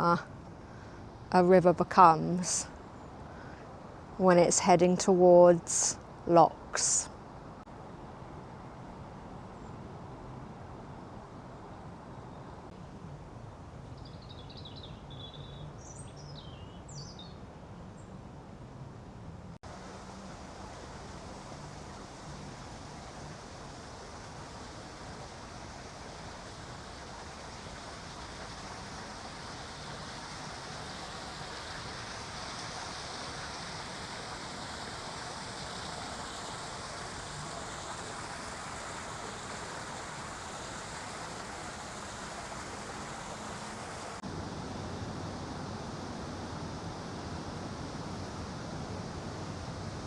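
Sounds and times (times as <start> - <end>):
river water rushing: 19.7 - 50.0.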